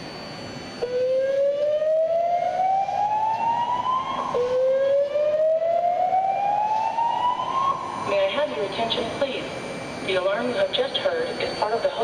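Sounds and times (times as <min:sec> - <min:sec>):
fire alarm rising whoop: 0:00.0 - 0:08.1.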